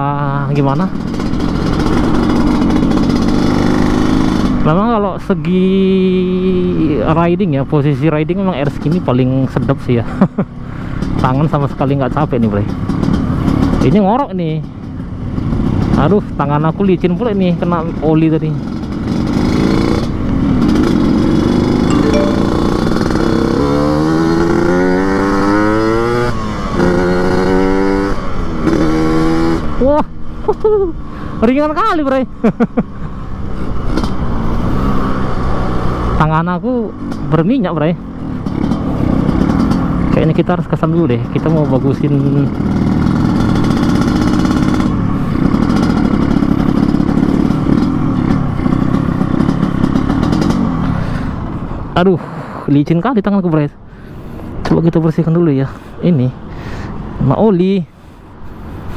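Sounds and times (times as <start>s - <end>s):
motorcycle engine accelerating: 0.7s - 4.7s, 18.6s - 29.7s, 42.5s - 51.2s.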